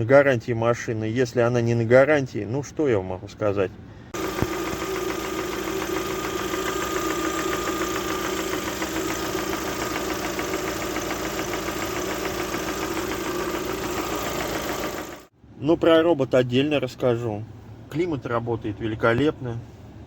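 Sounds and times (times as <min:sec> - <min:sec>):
car engine idling: 0:04.2 - 0:15.3
engine ticking knock: 0:04.2 - 0:15.3.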